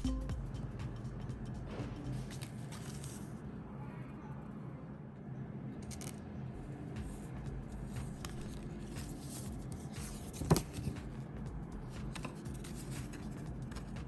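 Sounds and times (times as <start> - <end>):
steady low hum: 0.0 - 14.0
light scratching and handling: 2.1 - 3.4.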